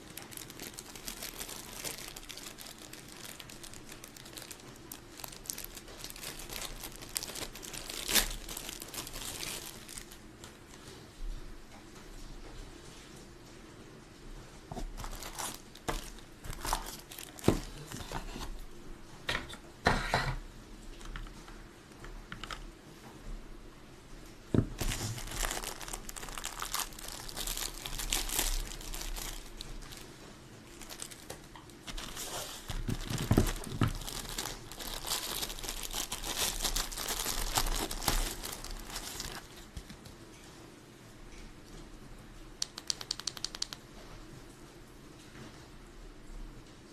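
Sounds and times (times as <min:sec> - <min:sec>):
packaging crinkling and rustling: 0:00.0 - 0:11.0, 0:14.7 - 0:18.6, 0:24.5 - 0:40.2.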